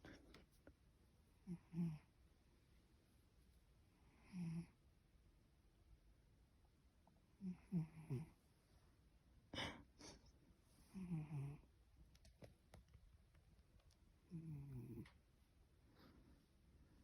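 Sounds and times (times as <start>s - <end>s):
cat snoring: 1.4s - 2.1s, 4.0s - 4.8s, 7.4s - 8.4s, 10.9s - 11.7s, 14.3s - 15.1s.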